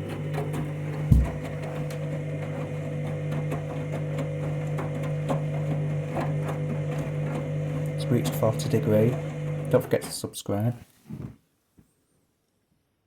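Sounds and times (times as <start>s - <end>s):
washing machine motor hum: 0.0s - 10.3s
loud thud: 1.1s - 1.4s.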